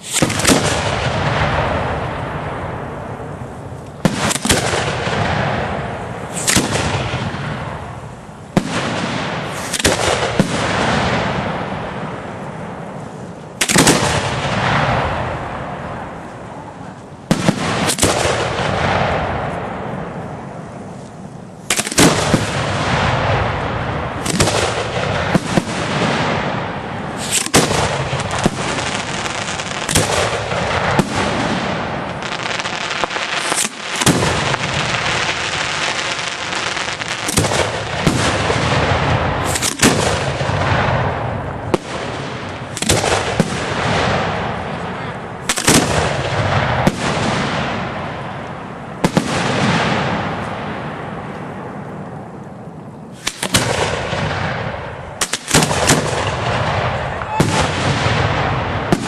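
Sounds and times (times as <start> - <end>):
firework shells bursting: 0.0 - 16.4, 17.3 - 44.7, 53.1 - 59.0
firework crackle and echo: 0.0 - 59.0.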